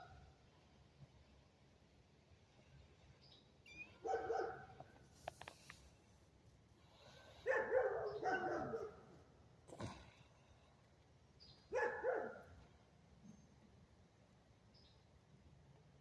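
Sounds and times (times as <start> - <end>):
faint click: 4.8 - 5.9.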